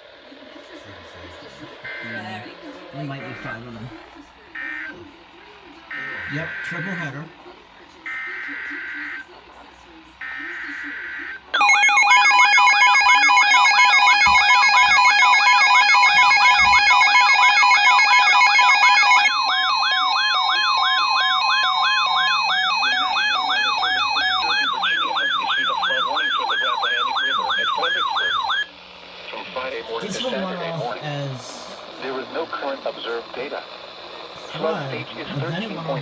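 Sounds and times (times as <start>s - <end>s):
warbling siren alert: 10.2s - 28.7s.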